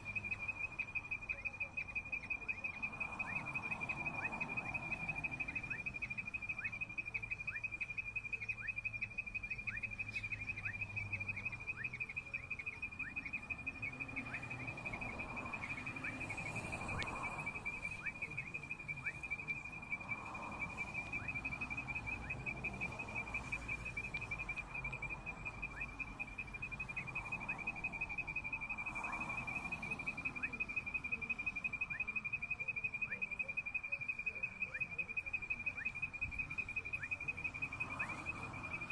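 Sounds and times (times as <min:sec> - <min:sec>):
insect pulsing trill: 0:00.0 - 0:38.9.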